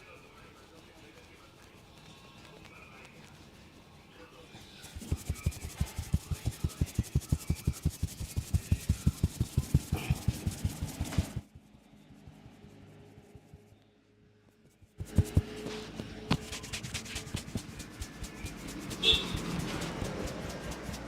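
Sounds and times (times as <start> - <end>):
rapid hand strikes thumping: 4.9 - 11.4, 14.8 - 21.0.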